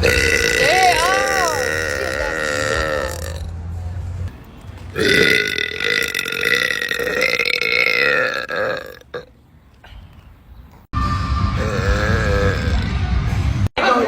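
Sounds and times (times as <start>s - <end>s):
woman burping: 0.0s - 3.5s, 5.0s - 9.3s, 11.6s - 12.9s.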